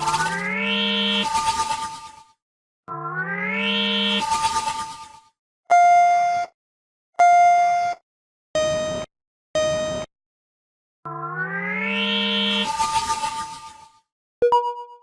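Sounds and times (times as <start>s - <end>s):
electronic beeps: 0.0s - 1.3s
rising synth sound: 0.0s - 2.1s, 2.9s - 5.1s, 11.1s - 13.9s.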